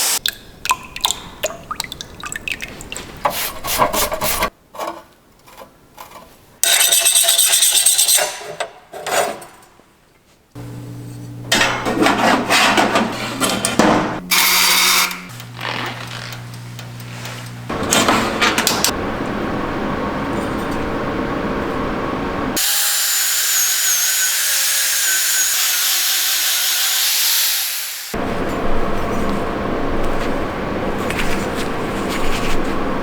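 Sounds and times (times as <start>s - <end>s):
steady machine hum: 10.6s - 22.6s, 28.2s - 33.0s
metal scraping and rubbing: 11.0s - 18.9s.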